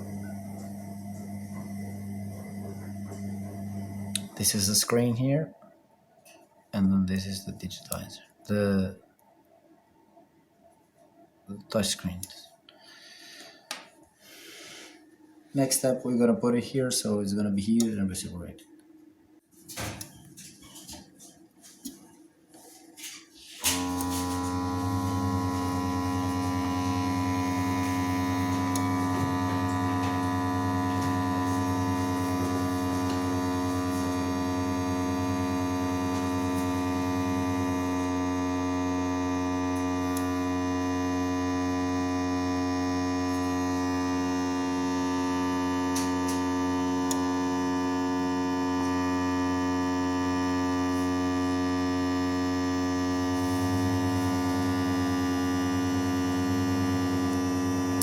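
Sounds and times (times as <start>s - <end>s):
machine electrical hum: 0.0s - 5.2s, 22.7s - 58.0s.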